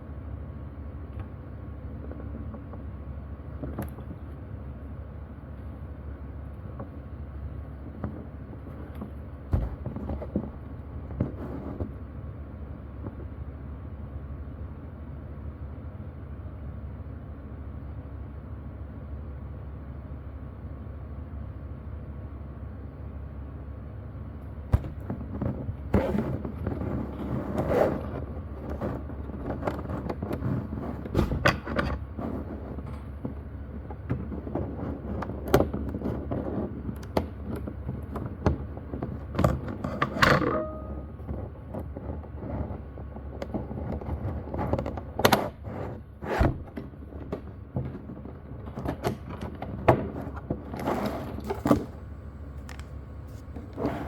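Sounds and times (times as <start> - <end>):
steady low hum: 0.0 - 54.0
hands handling boxes and packaging: 8.0 - 12.0, 24.7 - 54.0.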